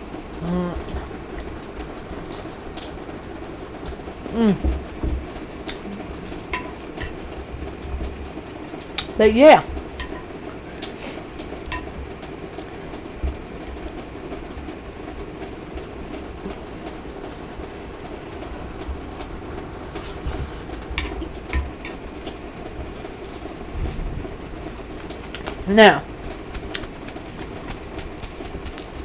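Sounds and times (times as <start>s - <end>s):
cutlery clinking on dishes: 5.7s - 7.3s, 10.0s - 11.0s, 11.6s - 12.0s.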